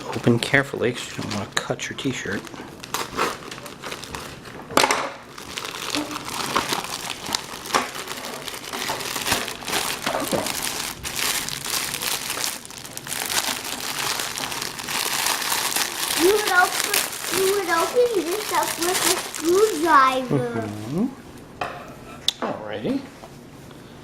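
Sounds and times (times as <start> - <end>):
plastic bag crinkling: 0.0 - 20.9
sharp crackles: 5.3 - 20.3.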